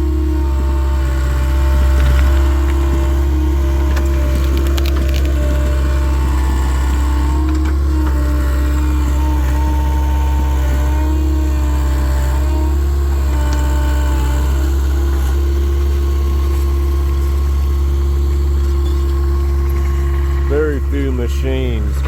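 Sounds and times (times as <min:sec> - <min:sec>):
diesel engine running with whine: 0:00.0 - 0:22.0
wood cracking and splintering: 0:01.6 - 0:10.0.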